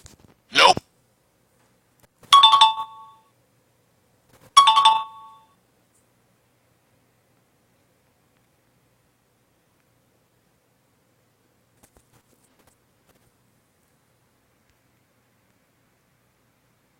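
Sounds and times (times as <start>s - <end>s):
electronic bell-like chime: 2.4s - 3.3s, 4.6s - 5.5s.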